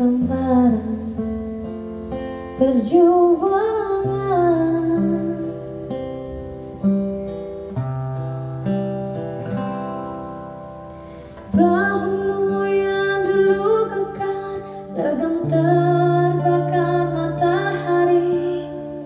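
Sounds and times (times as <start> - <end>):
person singing: 0.0 - 1.2, 2.6 - 5.9, 11.5 - 19.0
acoustic guitar plucked and strummed: 0.0 - 19.0.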